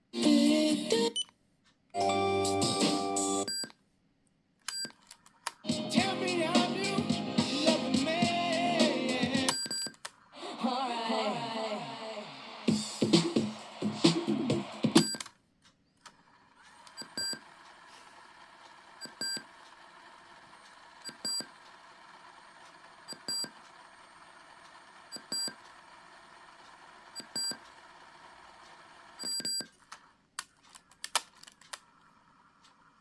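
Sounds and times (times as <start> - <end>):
small clicks: 4.6 - 5.6, 28.6 - 32.9.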